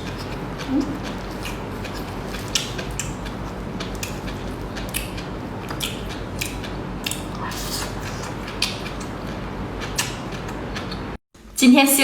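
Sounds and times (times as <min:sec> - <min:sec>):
eating clicks and crackles: 0:00.0 - 0:11.1.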